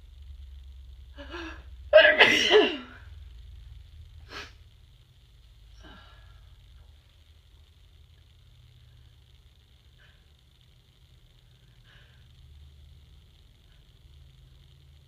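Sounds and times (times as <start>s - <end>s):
woman sneezing: 1.2s - 3.0s
sniff: 4.3s - 4.6s.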